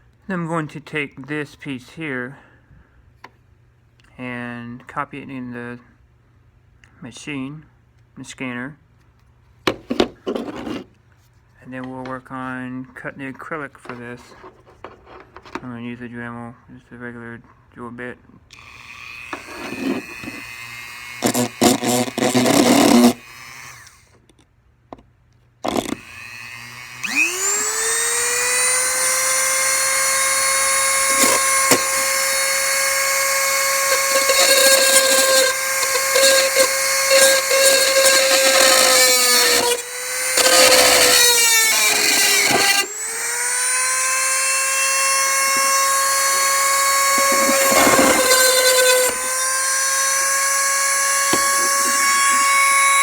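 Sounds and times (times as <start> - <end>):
rotary tool whining while drilling: 18.5 - 24.2, 25.6 - 53.0.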